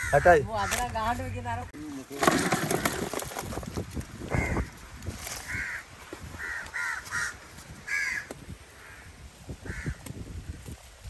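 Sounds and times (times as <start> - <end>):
crows cawing: 0.0 - 0.9, 4.3 - 4.8, 5.4 - 10.0.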